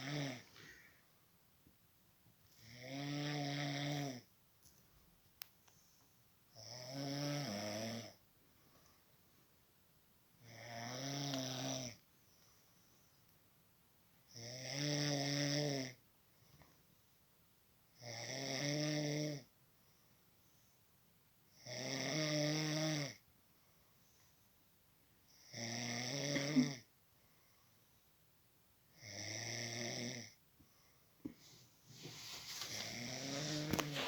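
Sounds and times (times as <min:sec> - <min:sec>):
person snoring: 0:00.0 - 0:00.8, 0:02.6 - 0:04.2, 0:06.6 - 0:08.2, 0:10.4 - 0:12.0, 0:25.4 - 0:26.9, 0:32.0 - 0:34.0
quiet breaths: 0:00.0 - 0:01.4, 0:02.4 - 0:09.6, 0:10.4 - 0:13.5, 0:16.2 - 0:17.2, 0:19.2 - 0:21.6, 0:23.1 - 0:25.6, 0:26.2 - 0:28.2, 0:29.9 - 0:34.0.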